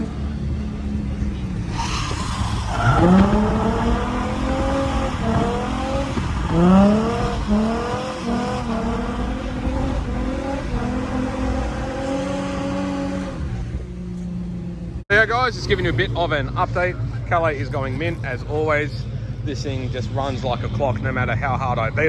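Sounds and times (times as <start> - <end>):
car engine revving hard: 0.0 - 14.0.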